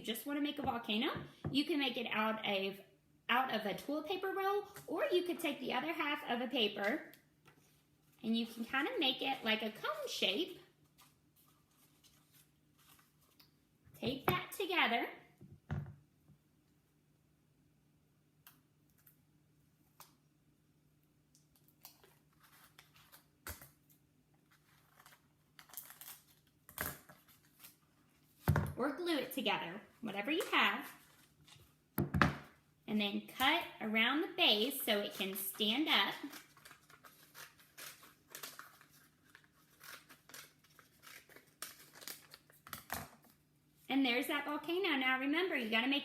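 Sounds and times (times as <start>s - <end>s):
paper rustling: 10.8s - 13.5s, 35.0s - 42.9s.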